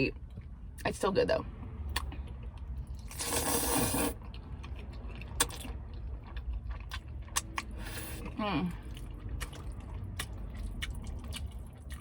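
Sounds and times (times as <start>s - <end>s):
close-miked eating sounds: 1.8s - 12.0s.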